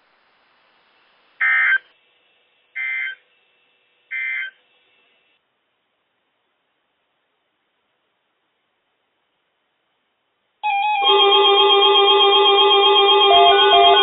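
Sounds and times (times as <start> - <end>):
faint radio receiver hiss: 0.0 - 10.6.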